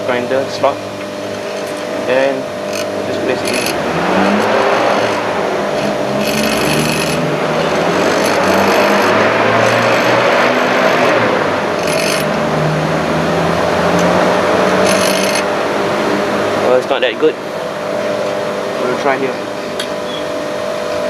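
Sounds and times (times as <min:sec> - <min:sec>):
bench grinder humming: 0:00.0 - 0:21.0
coin chattering on machine: 0:02.6 - 0:10.2, 0:11.8 - 0:12.4, 0:14.0 - 0:15.5.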